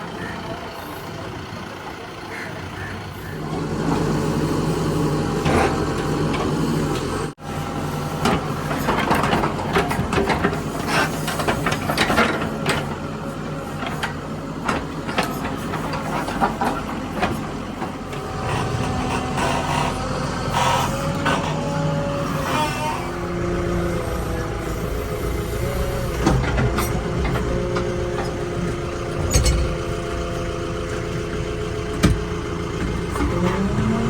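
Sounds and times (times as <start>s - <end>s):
diesel engine running: 0.0s - 34.0s
knocks and rattles: 29.2s - 30.6s.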